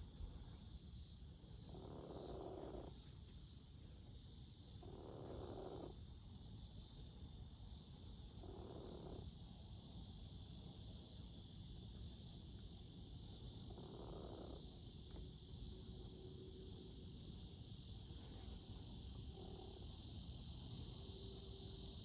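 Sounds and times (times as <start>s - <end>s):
chicken snoring: 1.7s - 2.9s, 4.8s - 5.9s, 8.4s - 9.3s, 13.7s - 14.6s.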